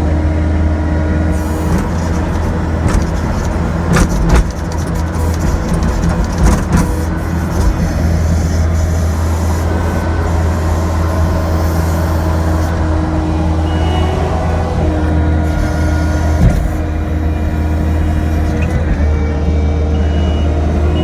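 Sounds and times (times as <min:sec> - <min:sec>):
diesel engine running: 0:00.0 - 0:21.0
whining tones changing pitch: 0:08.2 - 0:21.0.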